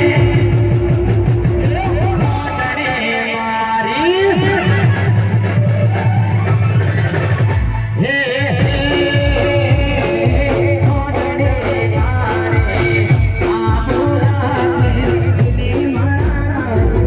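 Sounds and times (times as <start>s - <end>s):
heavy repeating bass beat: 8.6s - 17.0s.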